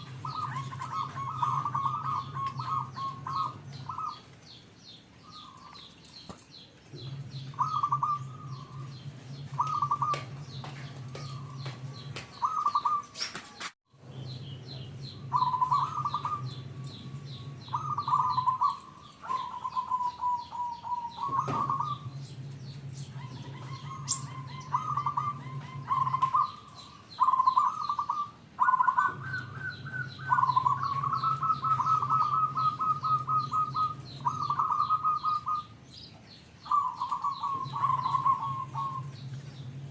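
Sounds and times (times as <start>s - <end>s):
dove cooing trills: 0.0s - 4.6s, 5.2s - 39.9s
small birds chirping faintly: 0.0s - 39.9s
low hum: 6.8s - 12.4s, 13.9s - 39.9s.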